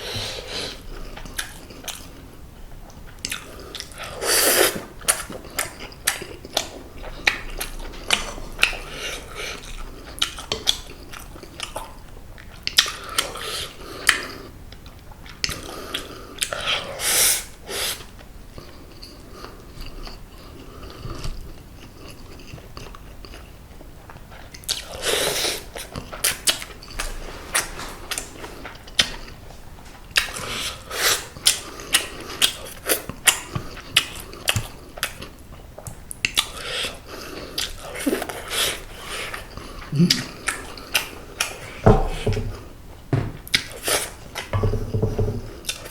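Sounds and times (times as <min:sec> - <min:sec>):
chewing with wet mouth clicks: 0:01.1 - 0:04.2, 0:04.8 - 0:16.8, 0:18.2 - 0:27.0, 0:30.1 - 0:41.8
loud smacking: 0:26.6 - 0:29.4.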